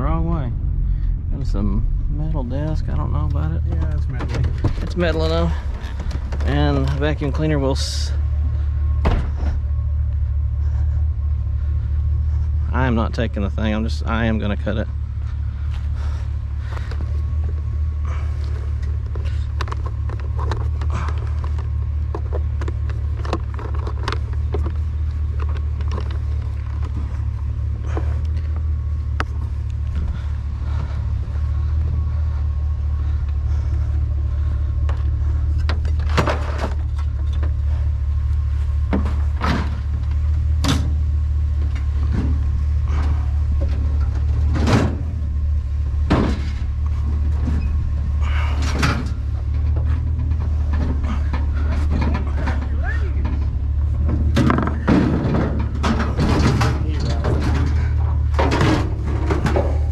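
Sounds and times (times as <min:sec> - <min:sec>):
steady low rumble: 0:00.0 - 0:59.9
scrap metal clanking: 0:46.0 - 0:59.9.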